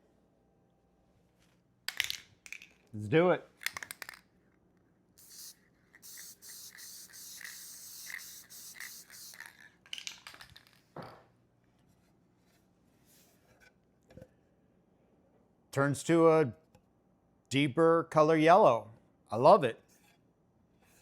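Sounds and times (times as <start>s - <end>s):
spray hiss: 5.2s - 9.5s.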